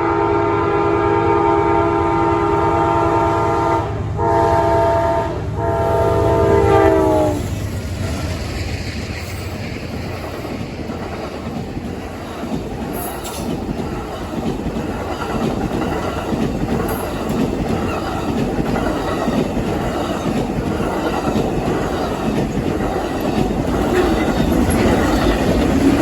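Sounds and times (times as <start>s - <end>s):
locomotive air horn chord: 0.0s - 7.5s
train wheels rumbling on rails: 0.0s - 26.0s.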